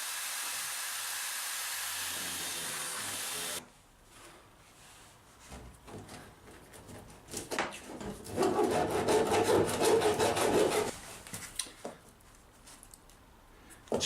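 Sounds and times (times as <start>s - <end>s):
hand tool rasping through wood: 8.3s - 10.9s.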